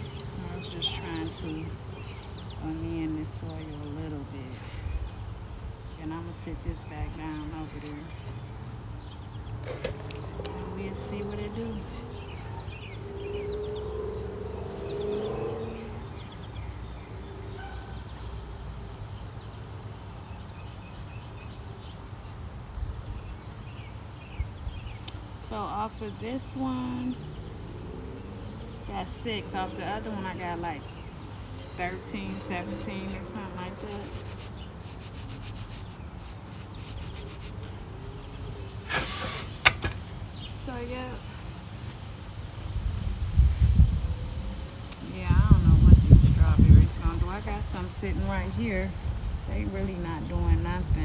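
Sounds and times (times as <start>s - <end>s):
rubbing and rustling: 0.0s - 27.1s, 29.0s - 51.0s
brief scrape: 38.6s - 40.0s
steady low rumble: 40.2s - 51.0s.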